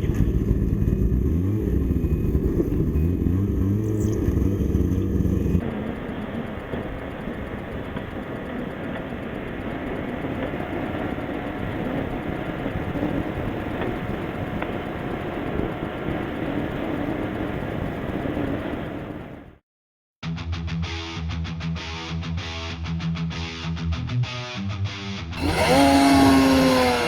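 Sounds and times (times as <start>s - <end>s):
snowmobile engine and track noise: 0.0s - 19.6s, 25.4s - 27.0s.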